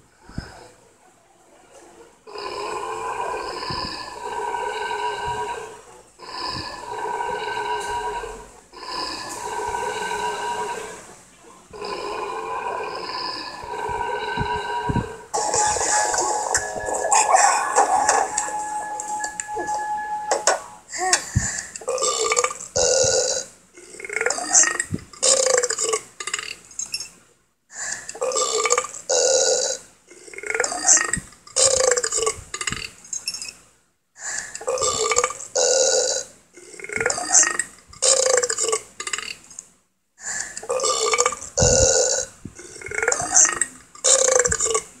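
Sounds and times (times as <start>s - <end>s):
loud burps: 2.3s - 11.0s, 11.7s - 18.6s, 21.4s - 24.5s, 28.2s - 32.3s, 34.6s - 39.4s, 40.6s - 44.9s.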